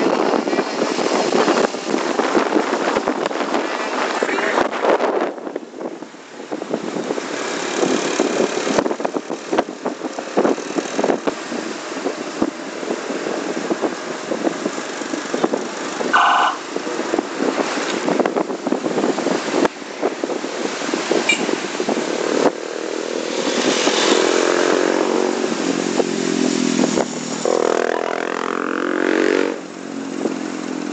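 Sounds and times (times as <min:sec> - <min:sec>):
road traffic and engine noise: 0:00.0 - 0:30.9
short vehicle horn beep: 0:21.3 - 0:21.5.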